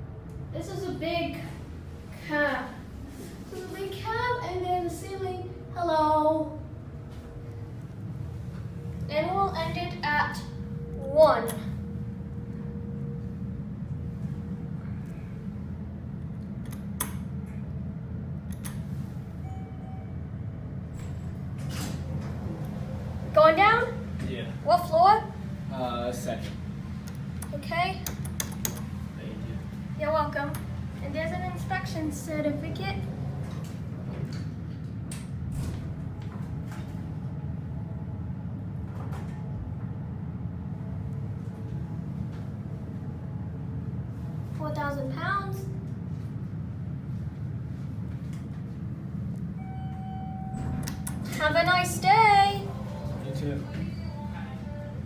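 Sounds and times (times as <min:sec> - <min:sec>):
elevator hum: 0:00.0 - 0:55.0
elevator cab clicks and rattles: 0:49.9 - 0:51.7.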